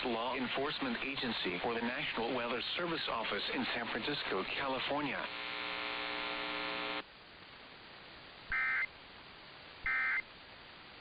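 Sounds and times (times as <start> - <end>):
buzzy steady tone: 0.3 - 7.0, 8.5 - 8.9, 9.8 - 10.3
warbling digital squawks: 8.5 - 8.9, 9.9 - 10.2.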